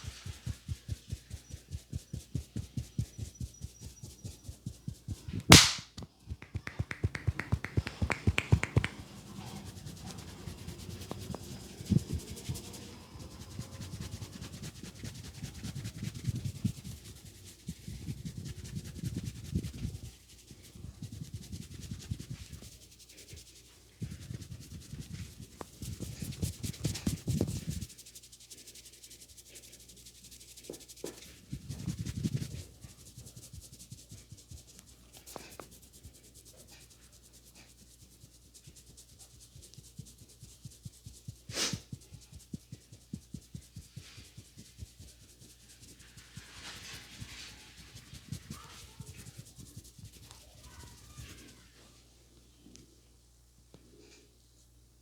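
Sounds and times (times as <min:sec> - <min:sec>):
hands patting head: 0:00.0 - 0:23.4
hands rubbing scalp and hair: 0:00.0 - 0:51.8
loud sharp smack: 0:05.5 - 0:09.0.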